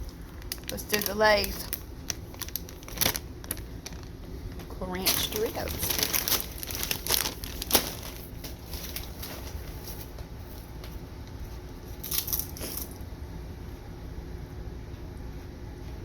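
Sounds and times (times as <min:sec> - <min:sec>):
foil chip bag crinkling: 0:00.0 - 0:10.8, 0:11.9 - 0:13.1.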